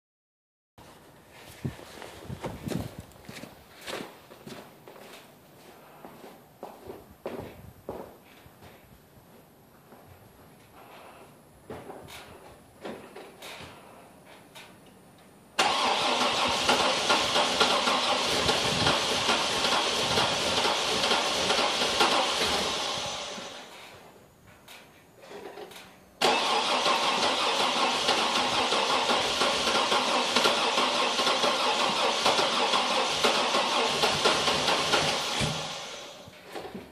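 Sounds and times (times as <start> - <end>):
engine cranking and struggling: 15.6 - 23.8, 25.3 - 36.4.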